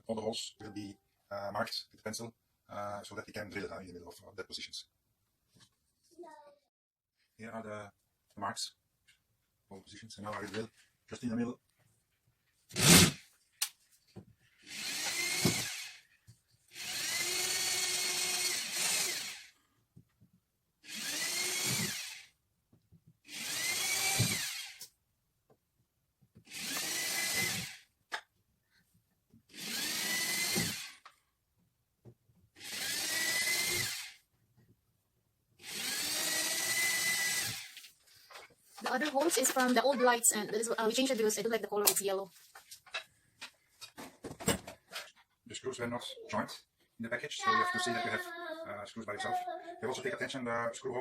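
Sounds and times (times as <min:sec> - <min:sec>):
electric drill whining: 0:14.6 - 0:16.1, 0:16.7 - 0:19.6, 0:20.8 - 0:22.3, 0:23.3 - 0:24.9, 0:26.4 - 0:27.9, 0:29.5 - 0:31.1, 0:32.6 - 0:34.2, 0:35.6 - 0:37.8.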